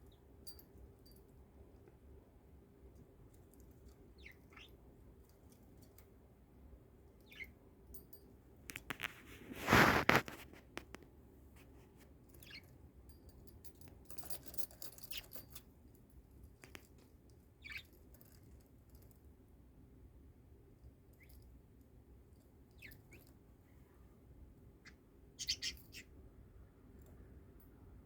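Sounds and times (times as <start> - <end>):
budgerigar chirping: 4.2 - 4.8, 7.2 - 7.5, 17.6 - 17.8, 24.8 - 26.1.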